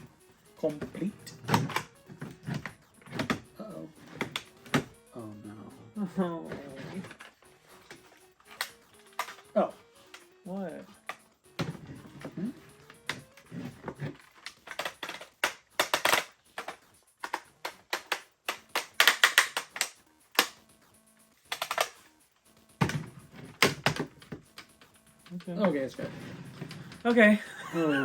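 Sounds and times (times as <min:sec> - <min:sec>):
plastic toy parts clicking: 0:00.6 - 0:05.0, 0:06.4 - 0:10.3, 0:10.9 - 0:20.7, 0:21.4 - 0:22.2.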